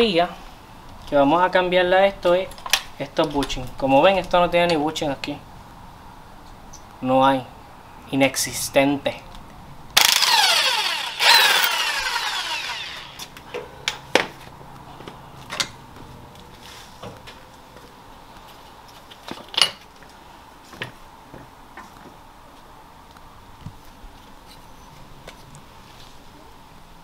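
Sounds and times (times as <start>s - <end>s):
power tool spinning down: 10.0s - 13.3s.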